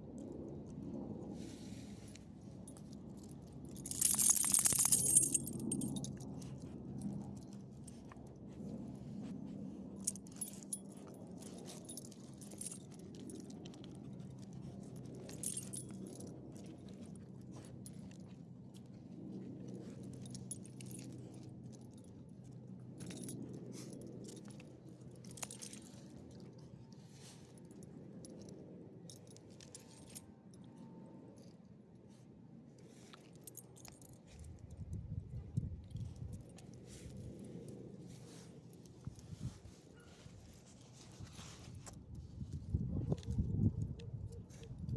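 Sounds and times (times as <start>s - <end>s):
small metal pieces jingling: 3.7s - 6.1s.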